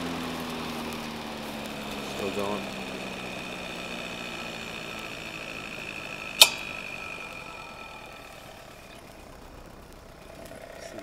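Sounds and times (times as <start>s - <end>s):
electric motor high whine: 0.0s - 11.0s
sharp click: 6.4s - 6.8s.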